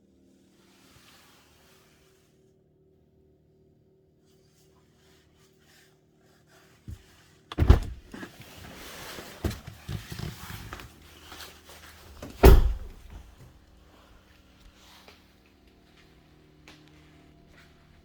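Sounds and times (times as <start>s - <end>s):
heavy thumps: 7.5s - 8.2s, 12.3s - 13.3s.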